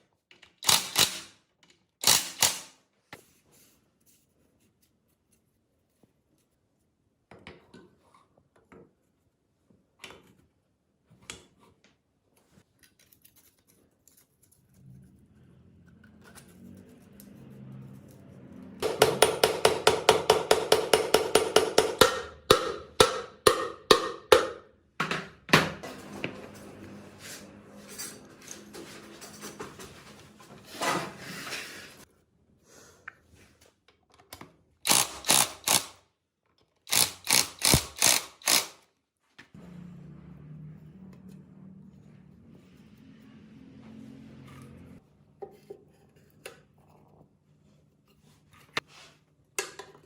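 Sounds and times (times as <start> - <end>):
hammer striking metal: 18.8 - 24.7.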